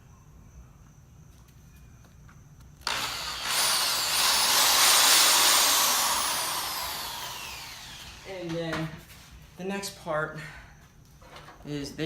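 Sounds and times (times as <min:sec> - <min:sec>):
power drill whining: 0:02.8 - 0:08.6.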